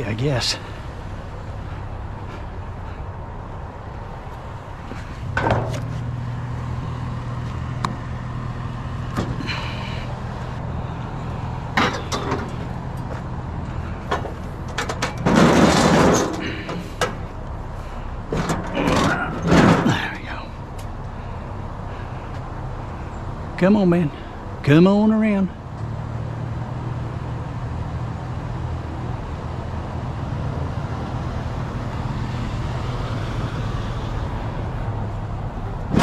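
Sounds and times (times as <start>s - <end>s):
vehicle engine running: 0.0s - 26.3s
knocks and rattles: 4.9s - 6.1s, 11.7s - 13.3s, 14.0s - 17.3s, 18.3s - 20.2s, 35.8s - 36.0s.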